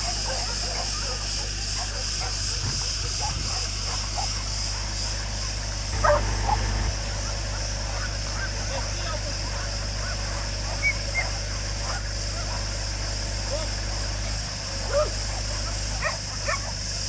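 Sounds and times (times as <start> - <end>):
honk-like animal calls: 3.1 - 16.8
steady hiss: 4.9 - 9.2.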